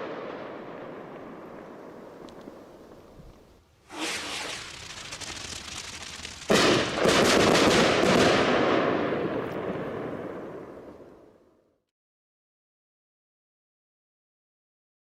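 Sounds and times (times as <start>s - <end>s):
firework rocket hissing launch: 3.8s - 8.0s
firework rapid crackling: 3.8s - 9.0s
firework loud burst: 3.8s - 10.8s.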